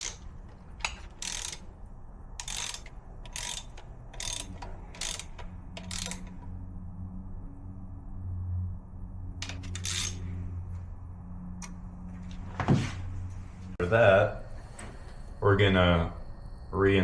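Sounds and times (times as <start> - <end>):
ratchet wrench rasping: 0.0 - 1.8, 2.4 - 6.6, 9.4 - 10.3.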